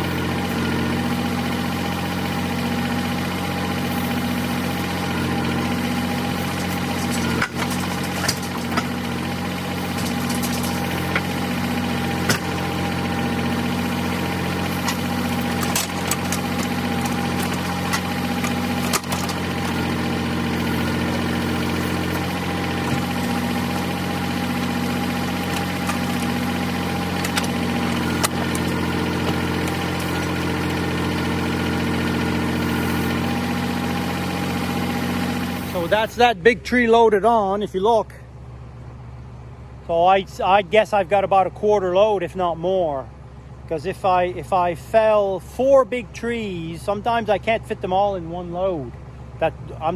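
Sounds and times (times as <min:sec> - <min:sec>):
pulsing hum: 0:00.0 - 0:36.5
machinery engine running: 0:00.0 - 0:49.9
sharp knocks: 0:12.2 - 0:12.6.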